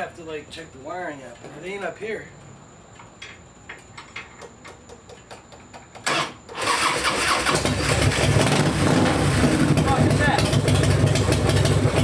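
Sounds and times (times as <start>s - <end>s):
motorcycle engine starting: 6.0s - 12.0s.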